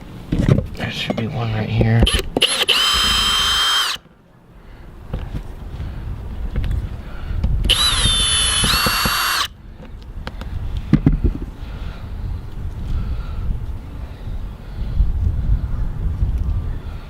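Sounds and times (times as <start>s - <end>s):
cordless drill whining: 2.1s - 4.0s, 7.7s - 9.5s
wind rumble on microphone: 4.9s - 17.0s.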